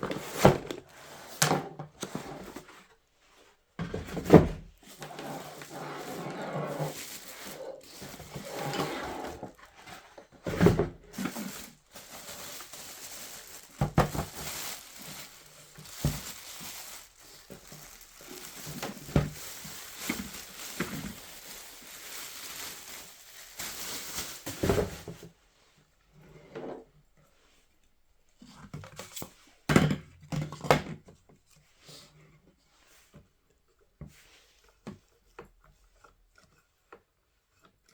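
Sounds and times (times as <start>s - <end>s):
crinkling and rustling: 0.0s - 25.3s
plastic parts knocking and clattering: 6.9s - 25.2s.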